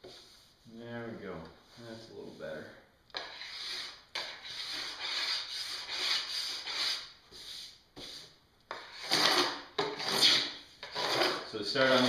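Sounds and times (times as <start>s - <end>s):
metal scraper rasping on snowboard base: 8.0s - 12.0s.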